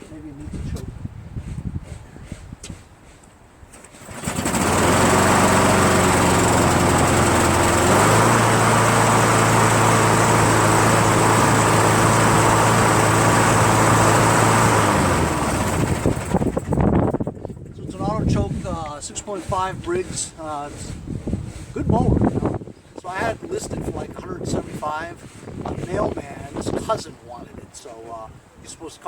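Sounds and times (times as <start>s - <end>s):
lawn mower engine: 3.7s - 22.5s.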